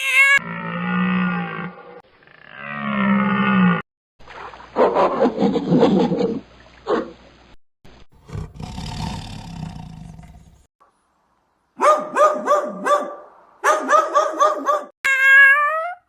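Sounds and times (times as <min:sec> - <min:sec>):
animal growling: 0:08.2 - 0:10.7.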